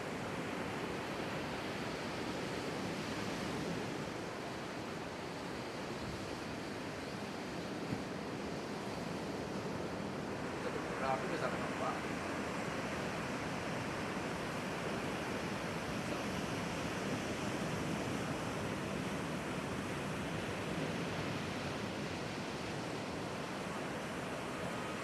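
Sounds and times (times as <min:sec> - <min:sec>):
strong wind: 0:00.0 - 0:25.0
ocean surf breaking: 0:06.4 - 0:25.0.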